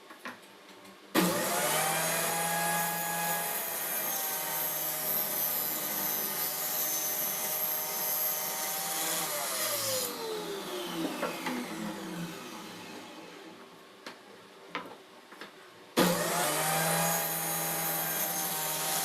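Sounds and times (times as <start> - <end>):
power tool motor whining: 1.2 - 13.5, 16.0 - 19.0.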